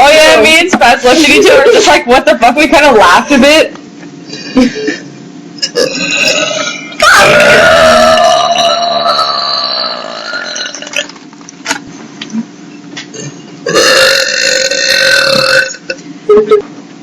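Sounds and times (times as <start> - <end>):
girls burping: 5.6 - 11.1, 13.7 - 16.0.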